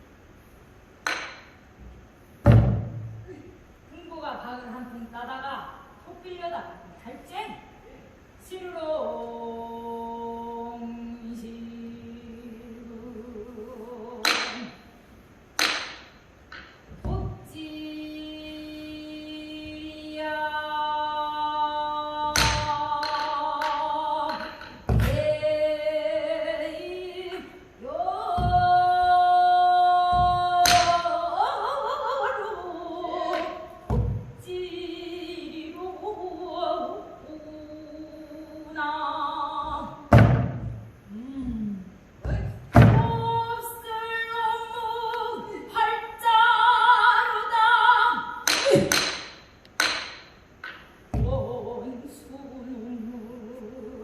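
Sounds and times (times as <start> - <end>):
barrel drum strikes: 2.4 - 3.2, 40.1 - 40.8, 42.3 - 43.4
woman singing long sliding notes: 7.7 - 15.8, 16.9 - 40.2, 41.0 - 49.2, 51.1 - 54.0.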